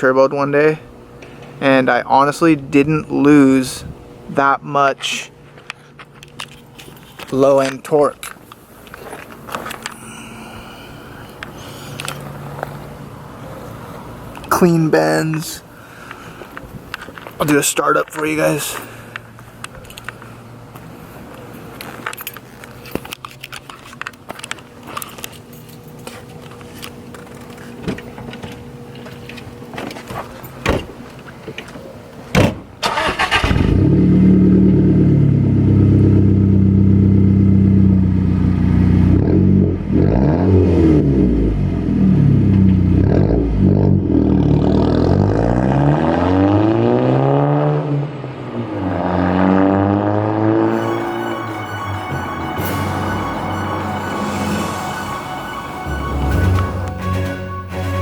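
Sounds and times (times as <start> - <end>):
car engine starting and idling: 32.8 - 39.2.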